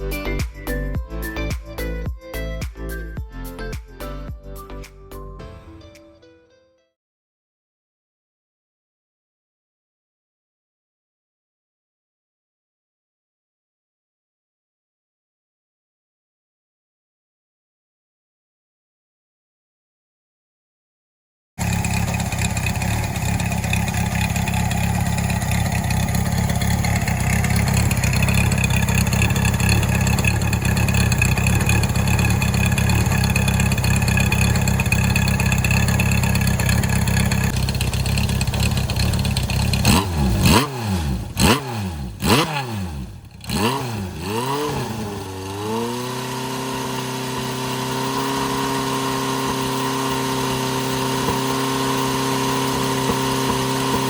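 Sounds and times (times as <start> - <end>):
motorcycle engine idling and revving: 21.6 - 54.0.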